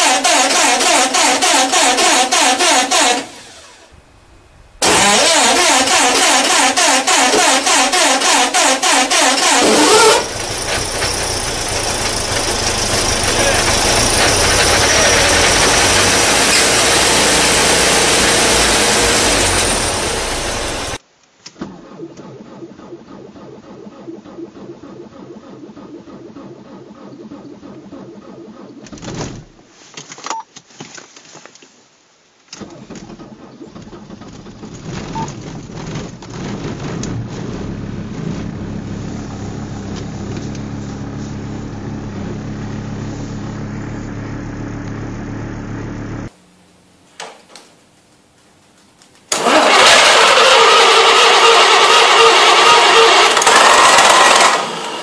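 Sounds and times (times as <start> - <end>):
loud engine: 0.0 - 21.0, 36.9 - 46.3, 49.3 - 55.0
engine starting and running: 0.0 - 29.6, 32.5 - 46.4, 49.2 - 55.0.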